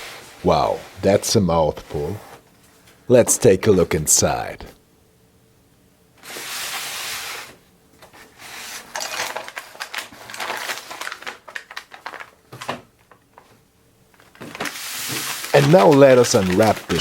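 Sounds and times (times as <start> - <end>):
paper crinkling and rustling: 6.2 - 17.0.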